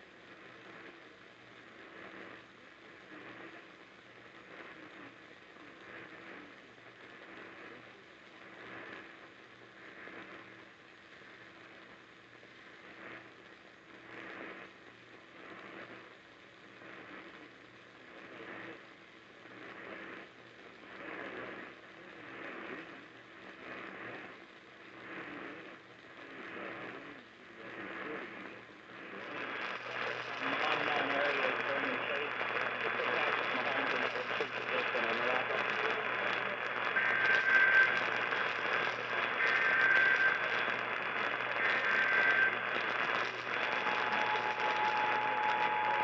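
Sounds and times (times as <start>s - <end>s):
radio static hiss: 0.0s - 46.0s
steady low hum: 0.0s - 46.0s.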